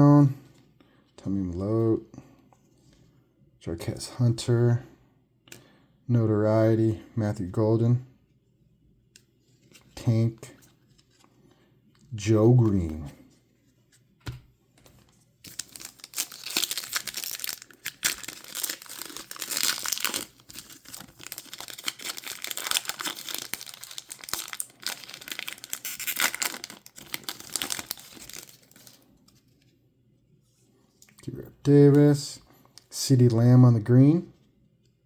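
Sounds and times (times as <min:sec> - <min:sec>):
card pack wrapper tearing and crinkling: 0:15.5 - 0:29.0.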